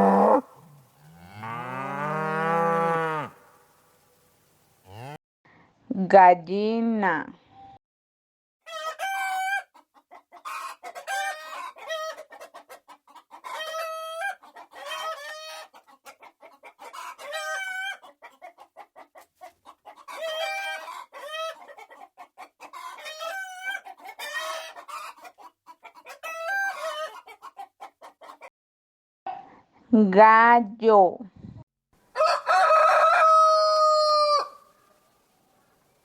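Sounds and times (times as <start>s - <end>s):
hen cackling: 0.0s - 3.4s, 8.7s - 28.5s, 32.2s - 34.8s.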